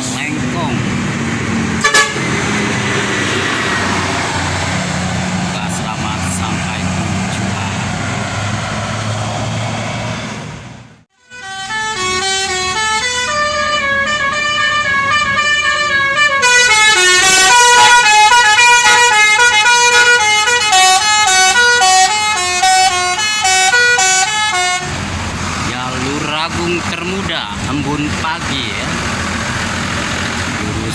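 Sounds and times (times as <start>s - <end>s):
passing traffic: 0.0s - 30.9s
bus air horn melody: 1.8s - 2.4s, 11.1s - 25.0s.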